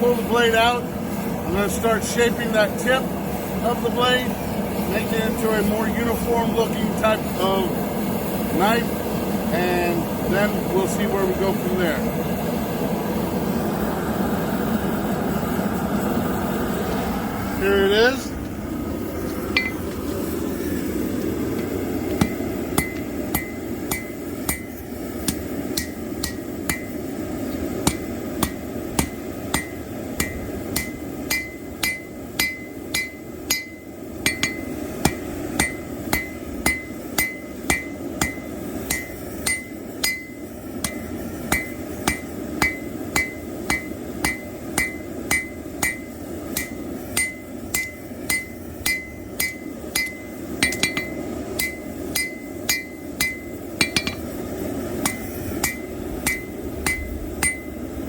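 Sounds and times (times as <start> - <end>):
hammer striking steel on anvil: 19.6 - 19.9, 21.6 - 27.1, 27.8 - 54.3, 55.0 - 57.8.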